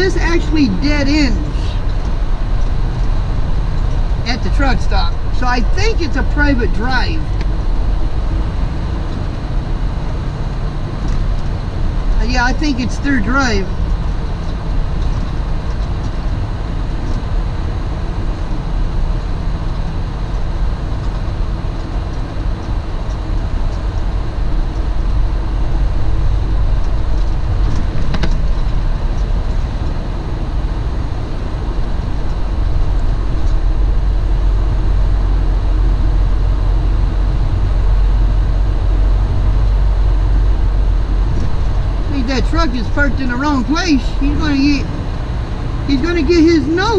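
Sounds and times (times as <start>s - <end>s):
road noise: 0.0s - 46.9s
truck diesel engine rumble: 0.0s - 46.9s.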